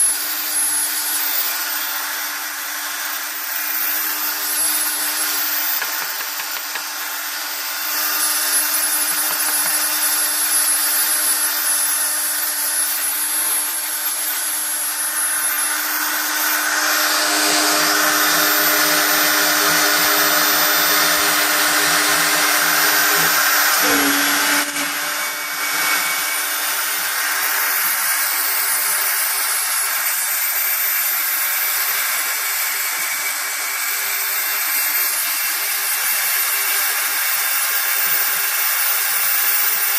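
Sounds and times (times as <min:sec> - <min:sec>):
cutter milling metal: 0:00.0 - 0:39.9
router spindle high whine: 0:00.0 - 0:39.9.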